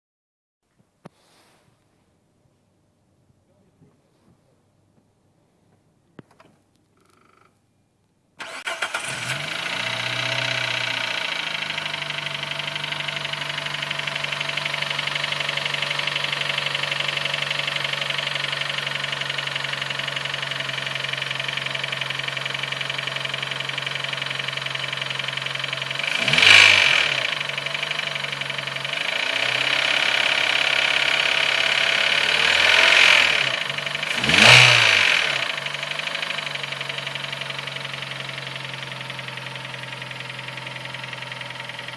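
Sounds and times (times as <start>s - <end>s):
car engine starting and idling: 8.4s - 41.9s
engine revving: 8.4s - 41.9s.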